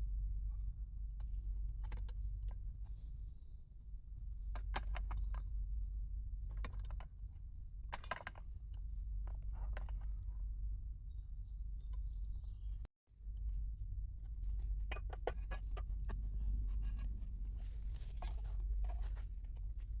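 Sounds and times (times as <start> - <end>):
low rumble: 10.4 - 20.0.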